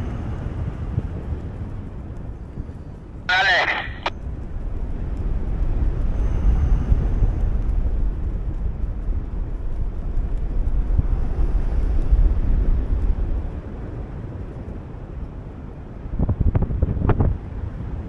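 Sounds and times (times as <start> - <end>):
wind buffeting microphone: 4.2 - 18.0.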